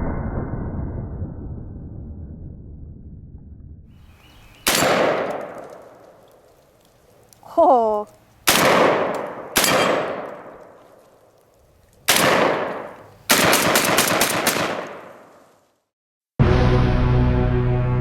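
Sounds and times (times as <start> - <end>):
shotgun shots echoing: 4.6 - 6.2, 8.4 - 11.1, 12.1 - 15.4
background music: 16.4 - 18.0.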